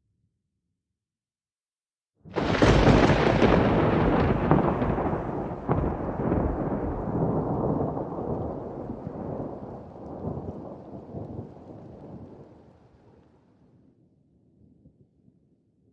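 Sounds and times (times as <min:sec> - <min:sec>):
loud thunderclap: 0:02.3 - 0:12.6
rolling thunder rumble: 0:02.3 - 0:12.8.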